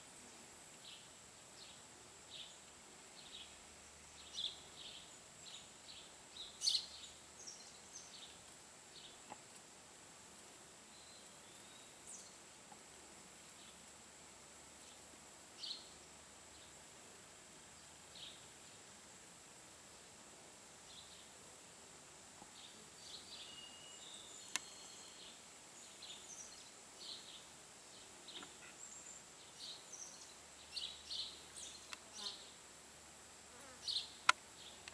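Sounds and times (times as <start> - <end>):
faint bird chirps: 22.5 - 32.5.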